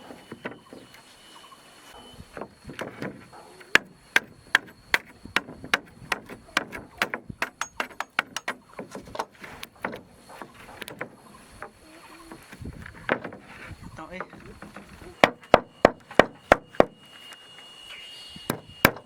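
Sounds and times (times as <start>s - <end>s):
hammer striking wood: 2.3s - 17.0s, 18.5s - 19.0s.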